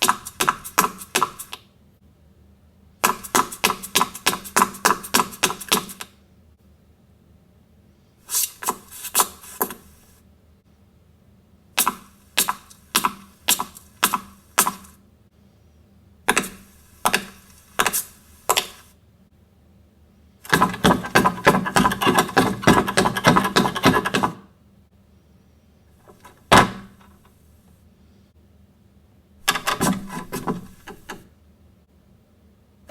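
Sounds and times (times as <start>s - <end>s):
sharp knocks: 20.5s - 24.4s, 26.1s - 27.1s, 29.4s - 31.2s.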